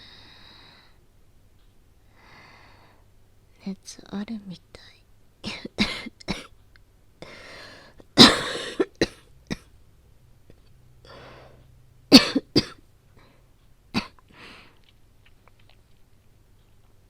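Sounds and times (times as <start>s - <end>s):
woman coughing: 5.4s - 6.5s, 8.2s - 9.7s, 12.1s - 12.8s, 14.0s - 14.2s
drawn-in breath: 7.2s - 8.0s, 11.0s - 11.7s.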